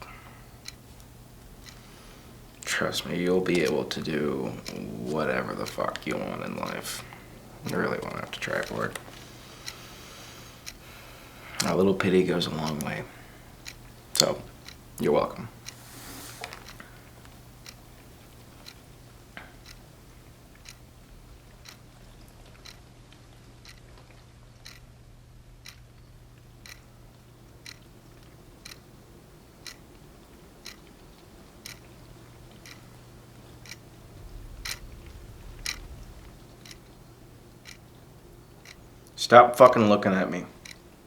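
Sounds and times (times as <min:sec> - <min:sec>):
clock ticking: 0:00.0 - 0:15.8, 0:16.4 - 0:25.0, 0:25.6 - 0:41.0
low steady hum: 0:00.0 - 0:41.0
low rumble: 0:32.5 - 0:38.4.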